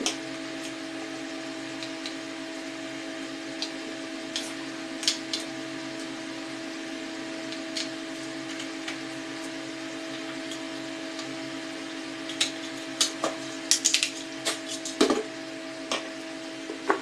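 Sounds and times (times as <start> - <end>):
steady background hum: 0.0 - 17.0.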